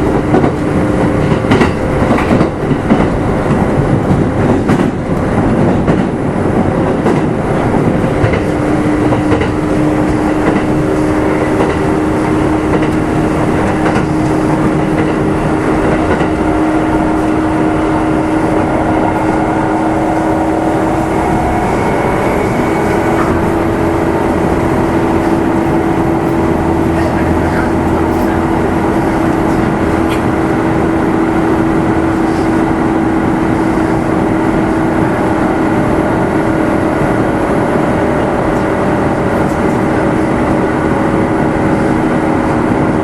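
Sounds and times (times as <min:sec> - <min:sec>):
train running: 0:00.0 - 0:43.0
steady droning tone: 0:19.0 - 0:28.8.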